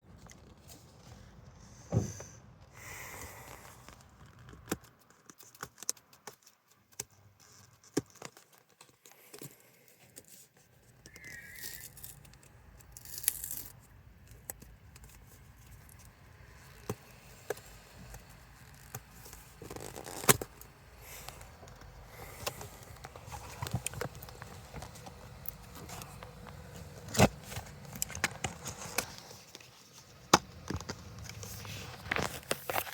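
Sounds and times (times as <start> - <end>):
packing tape cut and torn: 11.6 - 16.0, 17.6 - 29.6.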